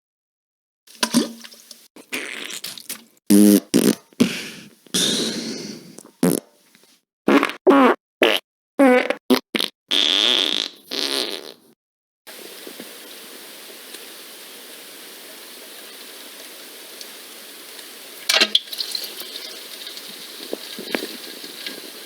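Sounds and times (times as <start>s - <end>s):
fart sound effects: 2.0s - 5.5s, 6.2s - 6.5s, 7.3s - 11.8s.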